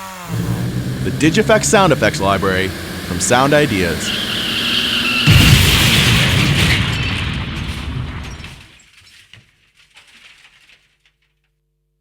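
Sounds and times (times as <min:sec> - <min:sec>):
loud explosion boom: 0:05.3 - 0:08.7
crackles and debris clicks: 0:05.3 - 0:11.6.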